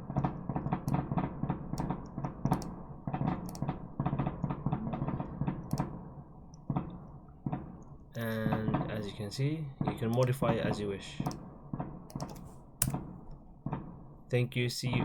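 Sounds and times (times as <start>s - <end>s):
steady low hum: 0.0s - 15.0s
clicks and knocks at a desk: 12.1s - 13.1s.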